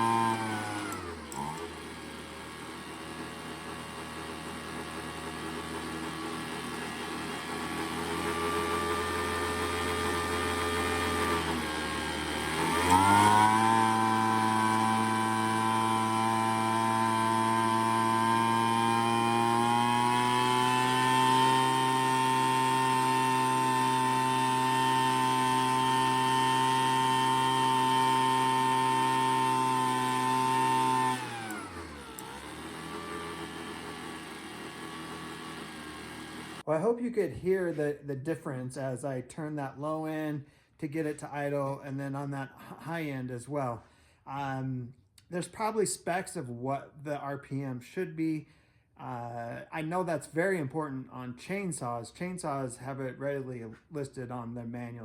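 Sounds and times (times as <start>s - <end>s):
leaf blower engine revving: 0.0s - 36.8s.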